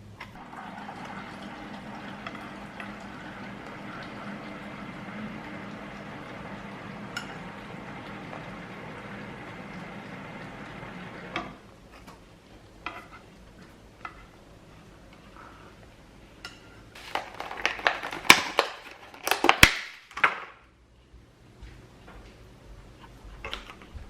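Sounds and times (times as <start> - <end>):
hard objects clattering and clicking: 17.0 - 20.4.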